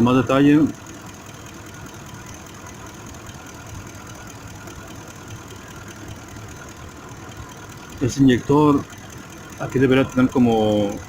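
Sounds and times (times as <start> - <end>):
engine idling with misfire: 0.0 - 11.0.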